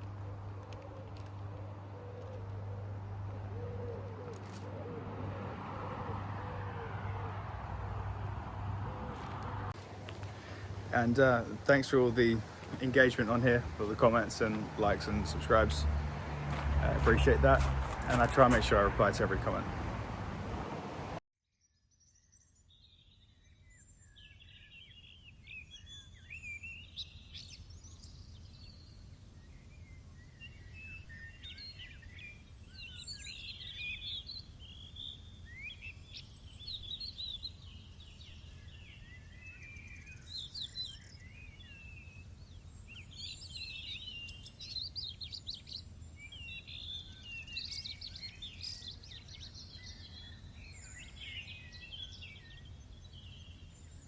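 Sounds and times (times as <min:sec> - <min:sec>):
low outdoor rumble: 0:00.0 - 0:21.2
small birds chirping: 0:09.0 - 0:21.2, 0:22.8 - 0:54.0.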